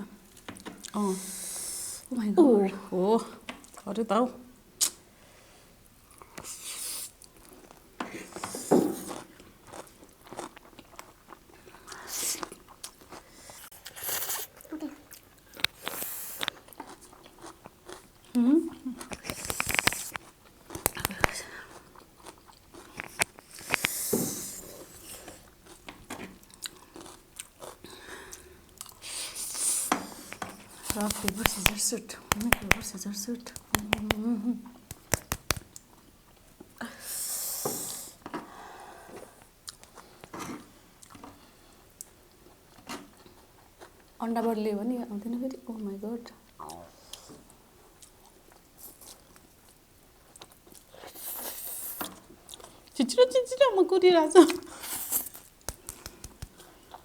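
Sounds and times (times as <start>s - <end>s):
wet mouth clicks: 4.8s - 5.0s, 19.0s - 25.5s, 30.2s - 35.8s, 54.5s - 57.0s
chewing and crunching noodles: 6.1s - 34.1s, 39.1s - 44.2s, 46.4s - 53.0s, 54.5s - 57.0s.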